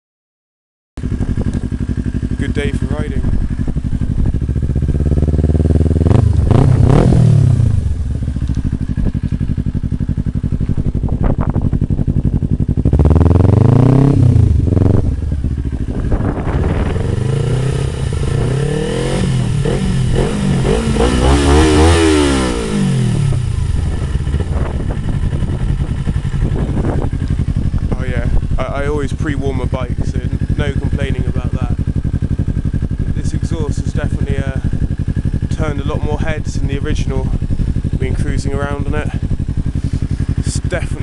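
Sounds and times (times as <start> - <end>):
motorcycle engine idling and revving: 1.0 - 41.0.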